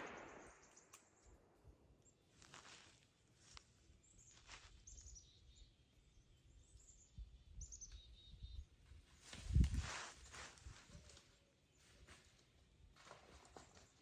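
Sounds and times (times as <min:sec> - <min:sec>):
small bird chirping: 0:04.0 - 0:08.8.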